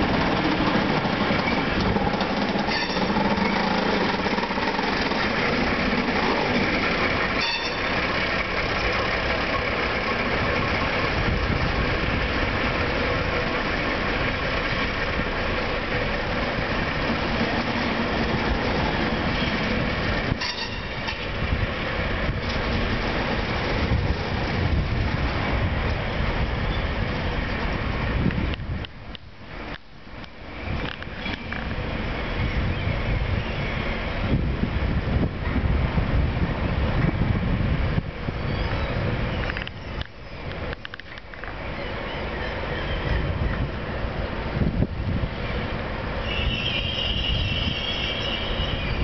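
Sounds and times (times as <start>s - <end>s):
wheels knocking on rails: 0.0s - 21.5s
train wheels squealing: 1.3s - 4.8s, 7.4s - 8.0s, 20.4s - 21.3s, 41.7s - 43.4s, 46.2s - 49.0s.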